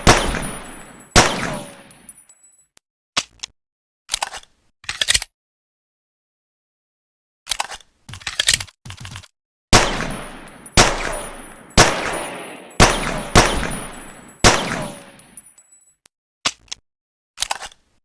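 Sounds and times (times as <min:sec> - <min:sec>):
echoing gunshots: 0:00.0 - 0:02.0, 0:09.7 - 0:15.3.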